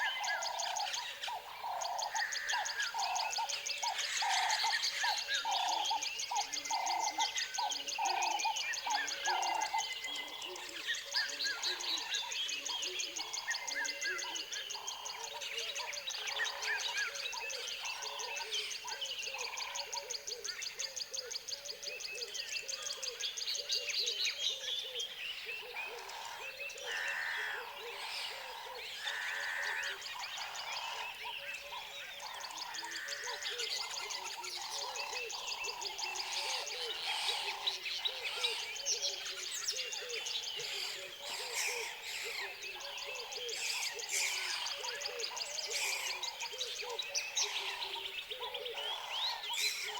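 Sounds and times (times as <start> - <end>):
birds chirping and calling: 0.0 - 49.9
long loud bird calls: 13.3 - 49.9.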